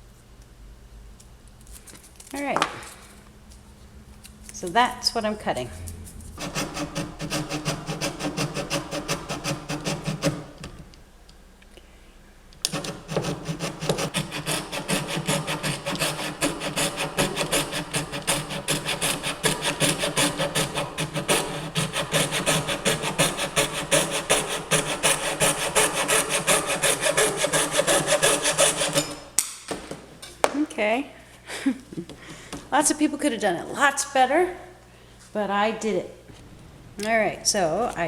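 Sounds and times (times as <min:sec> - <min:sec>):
hand saw cutting wood: 0:06.4 - 0:10.8, 0:12.7 - 0:29.4.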